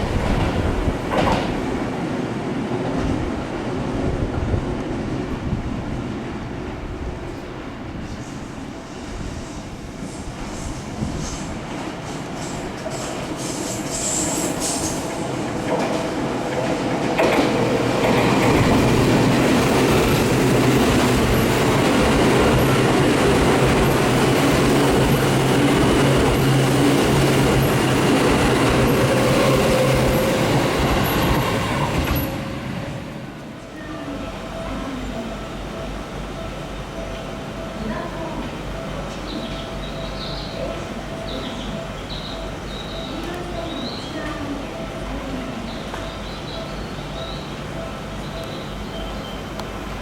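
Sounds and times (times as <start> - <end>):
electric train passing: 0.0 - 50.0.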